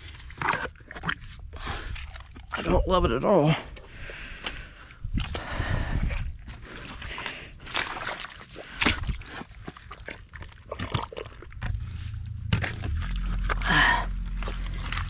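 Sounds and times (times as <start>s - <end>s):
muddy water sloshing: 0.0s - 15.0s
low steady hum: 7.6s - 15.0s.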